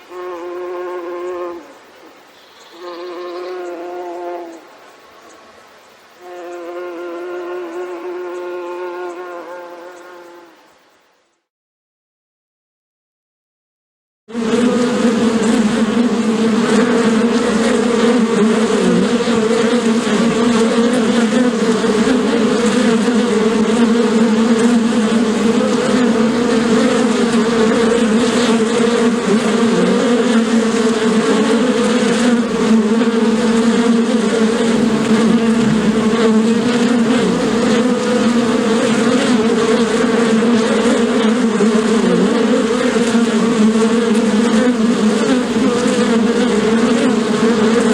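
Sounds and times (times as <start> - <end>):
bees buzzing: 14.3 - 47.9.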